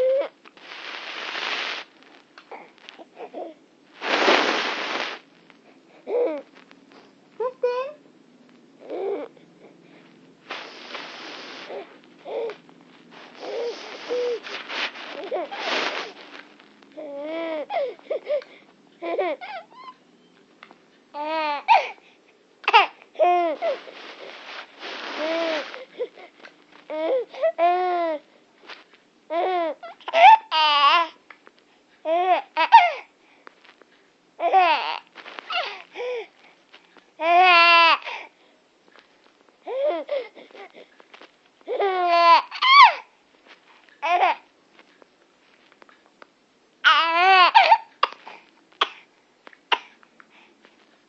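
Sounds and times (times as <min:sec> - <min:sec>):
baby squealing: 0:19.5 - 0:20.0, 0:41.8 - 0:43.0
baby laughing: 0:29.4 - 0:31.1, 0:46.9 - 0:48.2.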